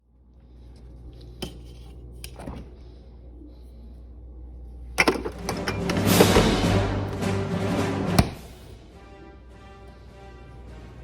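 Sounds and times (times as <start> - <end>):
low hum: 0.0 - 11.0
dishes and cutlery clinking: 5.0 - 6.6.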